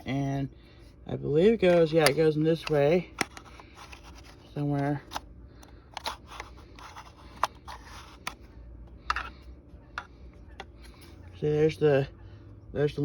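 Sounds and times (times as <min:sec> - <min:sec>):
plastic clicks and scrapes: 0:02.0 - 0:05.2, 0:05.9 - 0:08.4.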